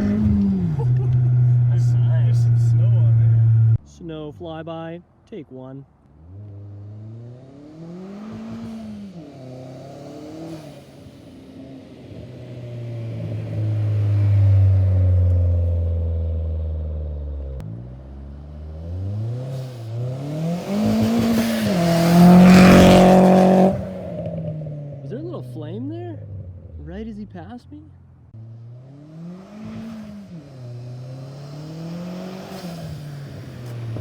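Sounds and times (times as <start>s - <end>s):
car accelerating past: 6.1s - 25.2s, 28.3s - 34.0s.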